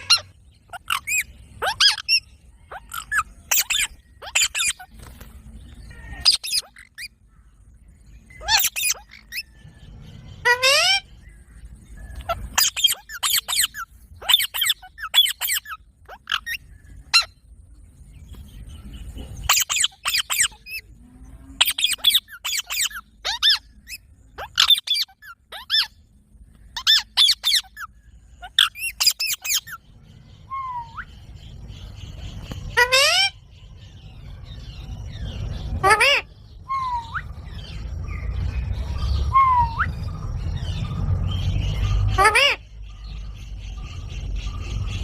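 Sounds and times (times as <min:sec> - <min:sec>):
parrot squawking: 0:00.0 - 0:04.9, 0:05.9 - 0:07.2, 0:08.3 - 0:09.5, 0:10.4 - 0:11.1, 0:12.2 - 0:17.3, 0:19.5 - 0:20.8, 0:21.6 - 0:26.0, 0:26.8 - 0:29.8, 0:32.7 - 0:33.4, 0:35.7 - 0:37.4, 0:41.7 - 0:42.7.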